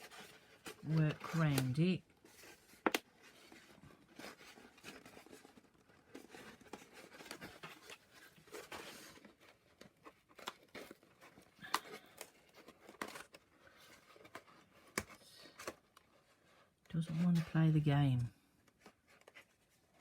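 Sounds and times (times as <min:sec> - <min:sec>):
paper rustling and crinkling: 0:00.0 - 0:20.0.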